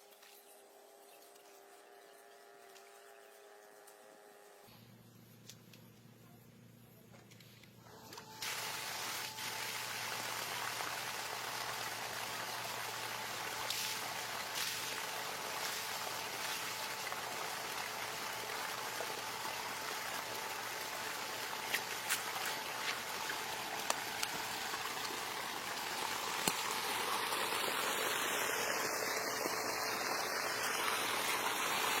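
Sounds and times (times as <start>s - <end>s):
water gushing and splashing: 8.4s - 32.0s.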